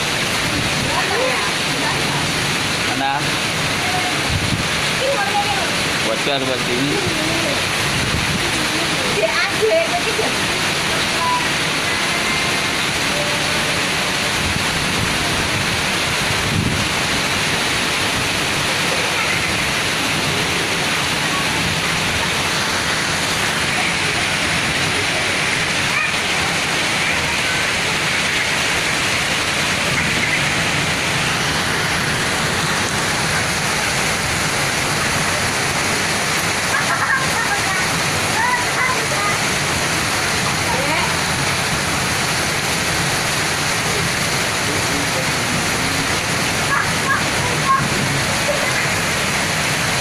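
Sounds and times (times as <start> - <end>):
heavy rain pouring: 0.0 - 50.0.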